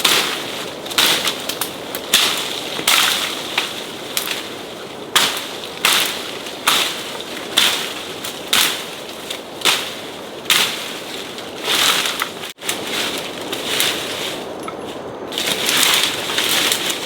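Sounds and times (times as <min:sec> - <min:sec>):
hand tool chopping into ground: 0:00.0 - 0:04.5, 0:05.2 - 0:14.2.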